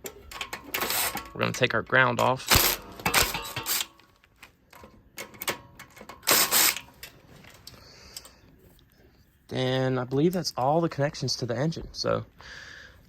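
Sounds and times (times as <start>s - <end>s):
hand-work clicks and metallic clatter: 0.0s - 8.4s.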